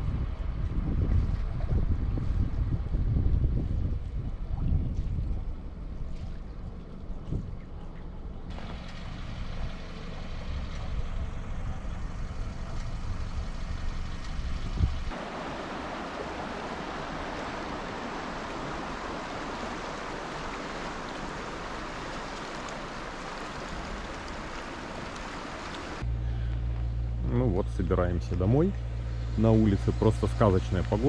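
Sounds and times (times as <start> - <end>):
low steady rumble: 0.0 - 31.0
steady rushing hiss: 15.1 - 26.0.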